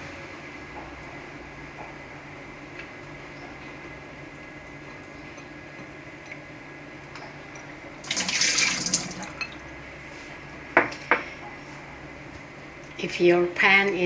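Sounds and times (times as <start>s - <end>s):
running water gush: 8.0s - 9.5s.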